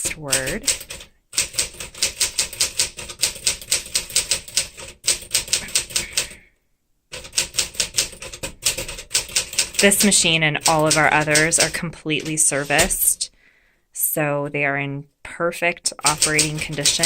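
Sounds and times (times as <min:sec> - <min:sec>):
manual typewriter typing: 0:00.0 - 0:06.4, 0:07.1 - 0:13.2, 0:15.9 - 0:17.0.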